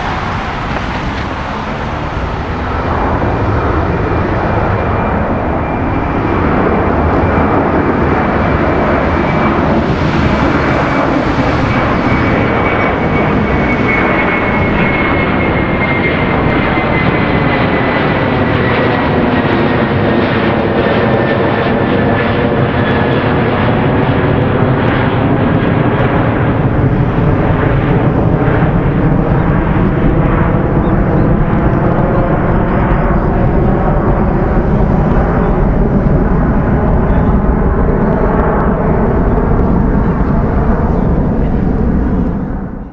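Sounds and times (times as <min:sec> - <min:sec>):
whining engine tone: 0:00.0 - 0:18.6, 0:27.2 - 0:42.9
jet engines at takeoff thrust: 0:00.0 - 0:42.9.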